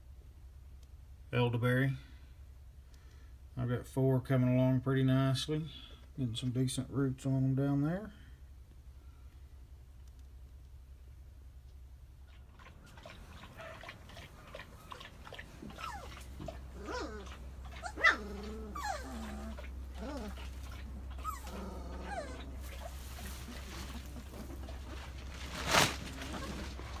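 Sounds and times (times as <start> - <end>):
puppies whining and yelping: 12.3 - 25.2, 26.2 - 27.0.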